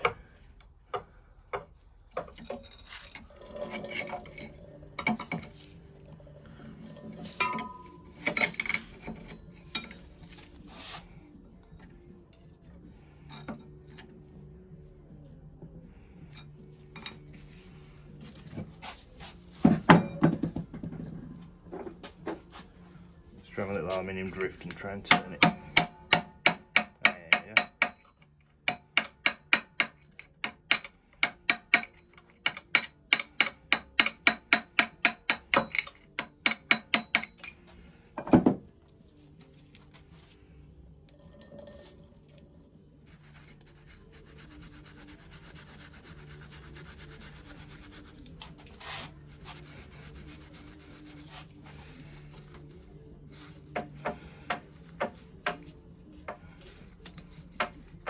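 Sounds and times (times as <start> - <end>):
scraping and handling: 1.6 - 11.2, 47.4 - 58.0
hammer tapping metal: 7.4 - 8.8, 25.0 - 37.6.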